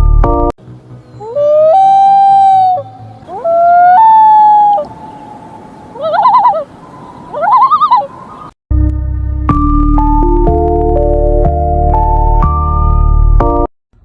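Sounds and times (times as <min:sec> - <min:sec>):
bird wailing calls: 0:01.1 - 0:08.5
bird quavering calls: 0:04.4 - 0:08.5.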